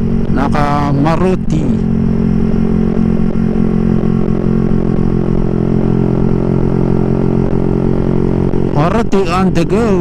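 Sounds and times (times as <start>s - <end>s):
motorcycle engine at steady revs: 0.0s - 10.0s
wind and road noise rumble: 0.0s - 10.0s.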